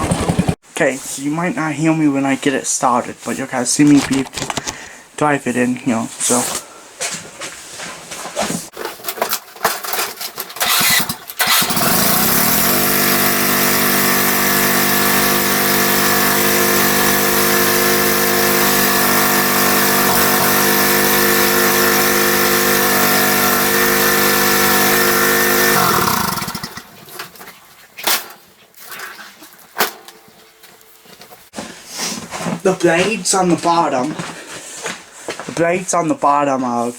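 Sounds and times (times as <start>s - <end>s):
riding lawn mower engine: 0.0s - 0.6s, 8.9s - 27.4s.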